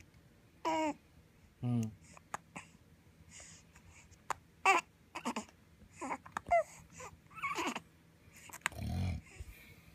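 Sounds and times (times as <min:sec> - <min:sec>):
baby babbling: 0:00.6 - 0:01.0, 0:04.6 - 0:07.8.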